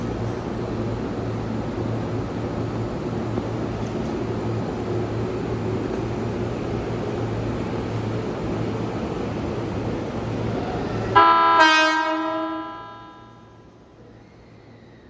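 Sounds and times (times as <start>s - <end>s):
electric train machinery hum: 0.0s - 15.0s.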